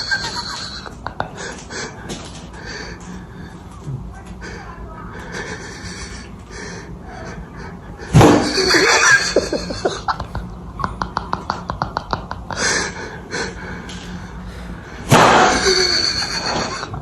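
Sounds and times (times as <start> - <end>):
person laughing in short bursts: 8.6 - 12.7.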